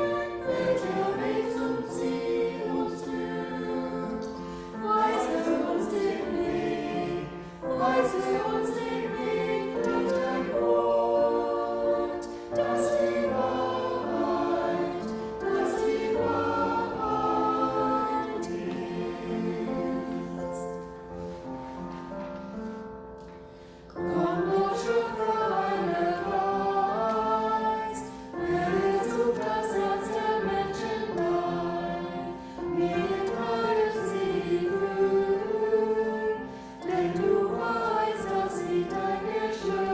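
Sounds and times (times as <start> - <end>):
choir singing a hymn: 0.0 - 22.8, 23.5 - 39.9.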